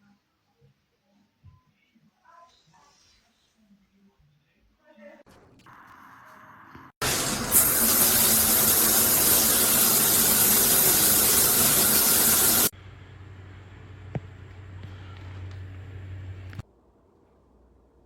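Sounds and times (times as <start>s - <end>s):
water spraying from shower head: 7.0s - 12.7s.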